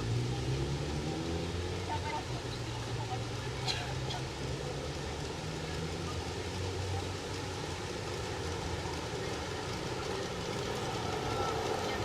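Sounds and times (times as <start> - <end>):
traffic rumble: 0.0 - 12.0.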